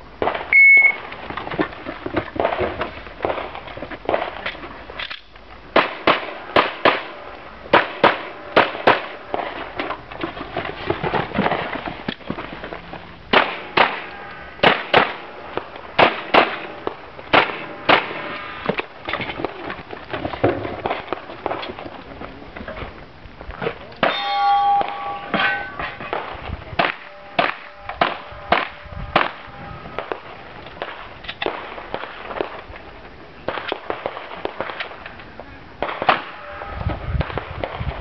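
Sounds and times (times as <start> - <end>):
shot timer beep: 0.5 - 1.0
pistol shots: 5.8 - 9.5, 13.3 - 15.3, 16.0 - 18.4, 26.1 - 32.6, 35.8 - 36.5.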